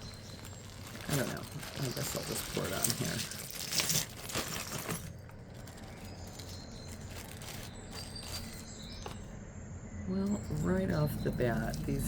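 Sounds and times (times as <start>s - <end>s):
jewelry clattering onto surface: 0.0s - 9.3s
steady low hum: 0.0s - 12.0s.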